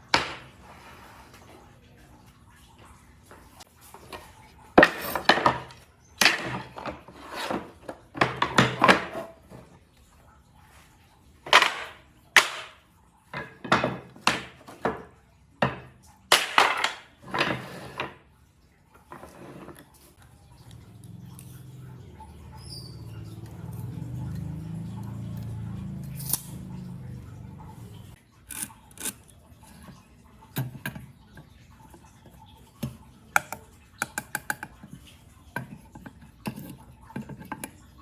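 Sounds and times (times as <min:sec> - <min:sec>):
low steady hum: 0:20.2 - 0:28.2.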